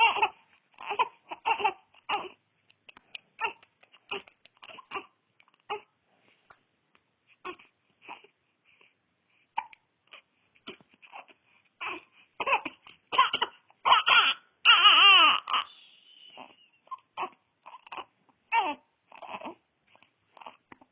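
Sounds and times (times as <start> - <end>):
baby fussing and crying: 0.0 - 6.0, 7.3 - 8.4, 9.6 - 20.8.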